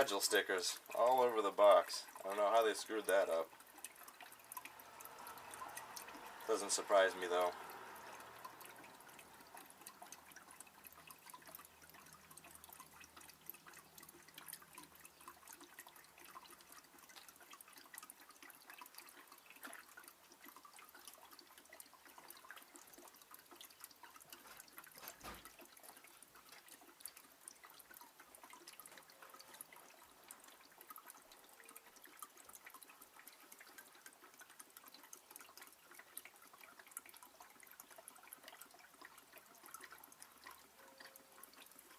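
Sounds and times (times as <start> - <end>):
oil dripping into a tub: 0.0 - 41.9.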